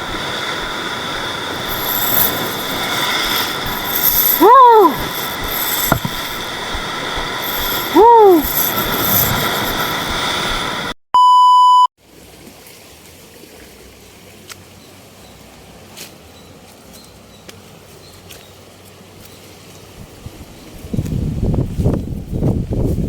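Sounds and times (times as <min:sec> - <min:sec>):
loud noise: 0:00.0 - 0:11.0
electronic beep: 0:11.2 - 0:11.9.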